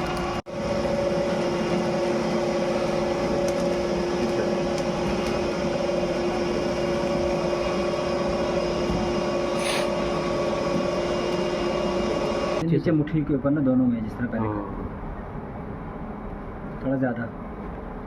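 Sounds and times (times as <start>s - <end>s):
factory machinery humming: 0.0s - 12.6s.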